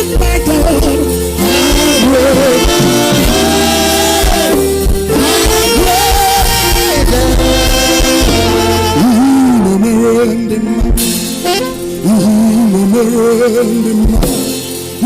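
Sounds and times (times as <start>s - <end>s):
person singing long notes: 0.0s - 14.3s
keyboard chords and bass: 0.0s - 15.0s.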